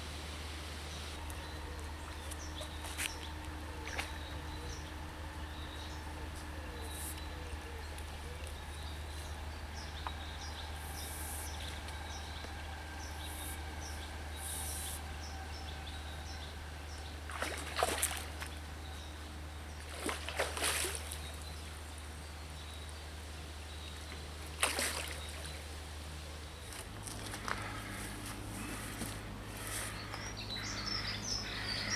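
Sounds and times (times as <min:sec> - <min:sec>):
water splashes: 0:01.1 - 0:05.4, 0:17.2 - 0:18.8, 0:19.7 - 0:21.8, 0:24.2 - 0:26.0.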